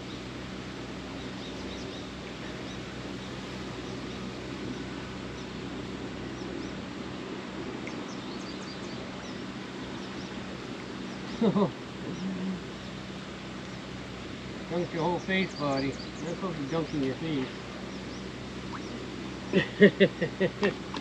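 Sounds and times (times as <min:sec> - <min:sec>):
faint high bird chirps: 0:15.2 - 0:19.6.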